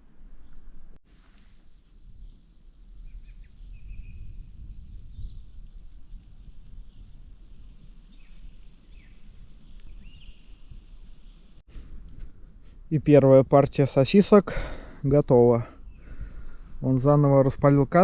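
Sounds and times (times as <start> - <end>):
wind noise rumble: 0.8 - 13.5
small birds chirping: 2.8 - 11.6, 15.8 - 16.6.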